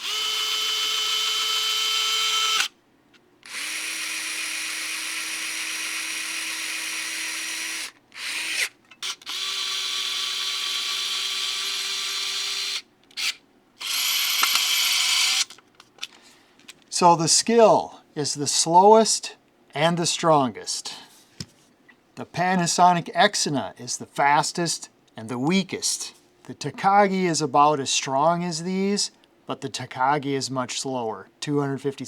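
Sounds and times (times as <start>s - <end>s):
electric screwdriver motor whine: 0.0s - 2.7s, 3.4s - 15.6s.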